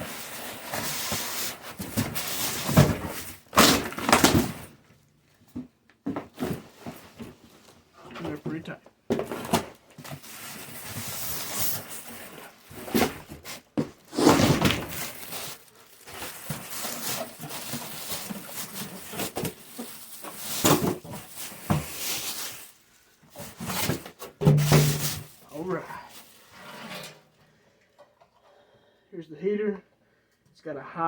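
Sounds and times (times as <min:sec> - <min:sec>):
cardboard and plastic tearing: 0:00.0 - 0:04.7, 0:09.1 - 0:27.0.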